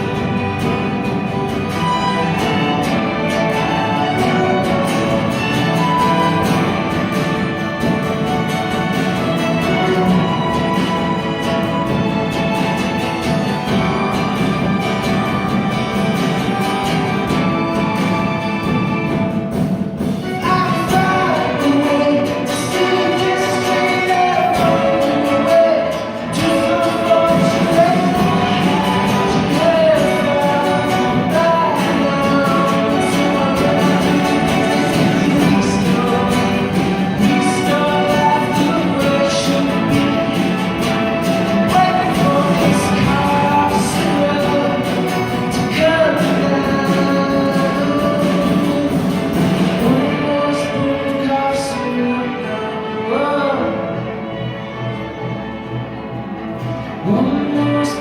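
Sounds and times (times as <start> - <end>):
pop-rock band with steady beat: 0.0 - 53.0
string orchestra playing held chords: 0.0 - 58.0
person singing: 20.3 - 54.1, 56.9 - 58.0.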